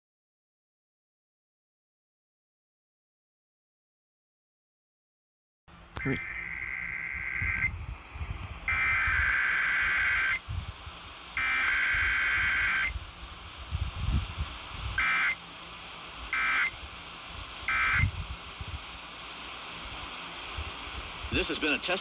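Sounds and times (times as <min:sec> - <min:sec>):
low rumble of radio noise: 0:05.7 - 0:22.0
buzzing two-tone data bursts: 0:06.0 - 0:07.8, 0:08.6 - 0:10.4, 0:11.4 - 0:13.1, 0:15.0 - 0:15.5, 0:16.3 - 0:16.9, 0:17.6 - 0:18.2.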